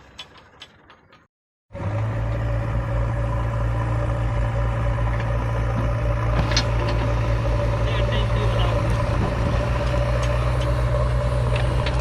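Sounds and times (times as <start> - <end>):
diesel engine humming: 1.7 - 12.0.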